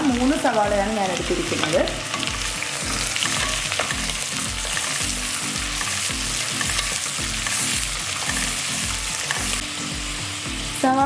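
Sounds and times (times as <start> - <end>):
onions sizzling in oil: 0.0 - 11.0
spoon scraping a pot: 1.6 - 9.6.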